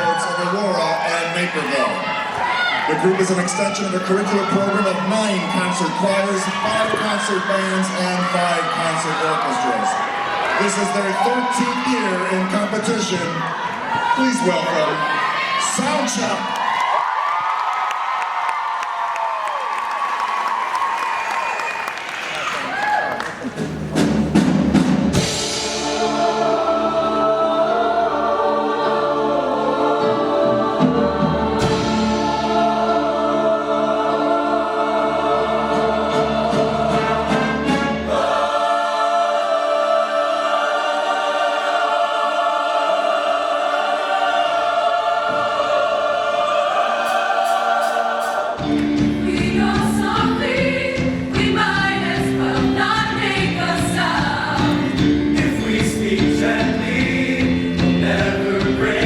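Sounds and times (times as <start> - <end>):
choir singing: 25.1 - 59.0
live band playing: 54.2 - 59.0.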